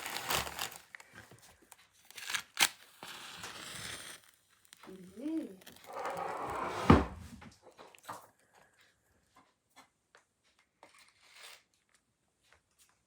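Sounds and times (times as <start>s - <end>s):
heavy thump: 6.2s - 7.5s.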